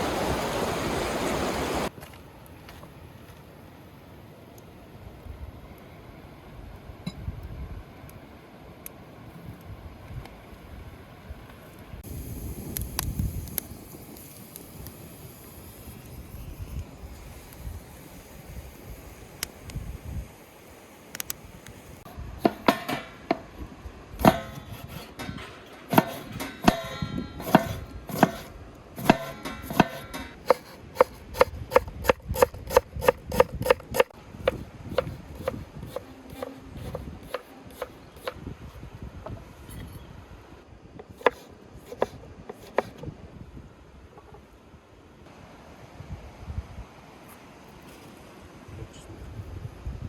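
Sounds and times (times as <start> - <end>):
knife chopping on cutting board: 27.5 - 38.4.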